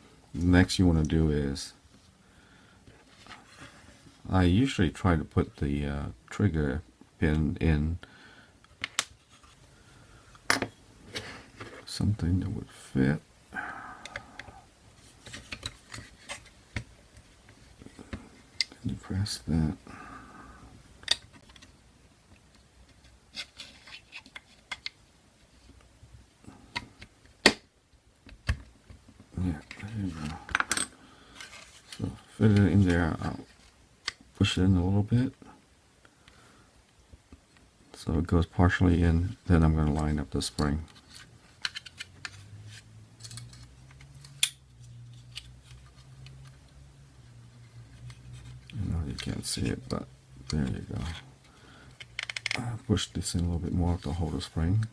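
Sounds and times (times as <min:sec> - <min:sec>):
small plastic parts clicking: 0:51.9 - 0:52.6.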